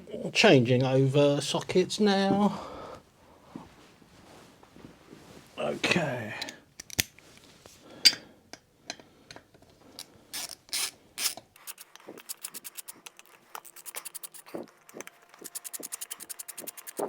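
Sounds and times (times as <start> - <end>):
socket ratchet clicking: 10.3 - 17.0.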